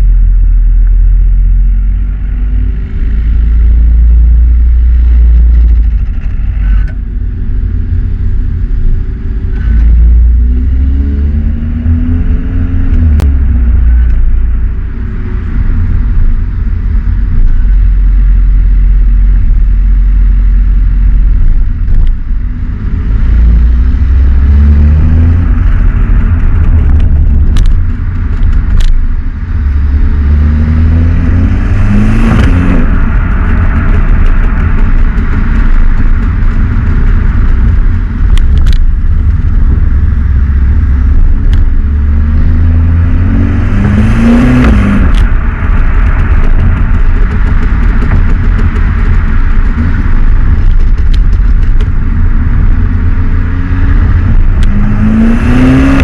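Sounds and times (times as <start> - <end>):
exhaust cracks: 0.0 - 56.0
car engine revving through gearshifts: 29.9 - 39.8, 42.2 - 45.4, 53.3 - 56.0.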